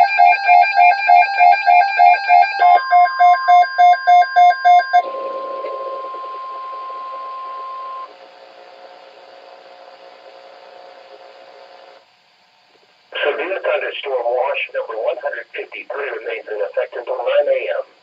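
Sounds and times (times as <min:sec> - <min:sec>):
electronic alarm beeping: 0:00.0 - 0:08.1
faint radio hiss: 0:08.4 - 0:18.0.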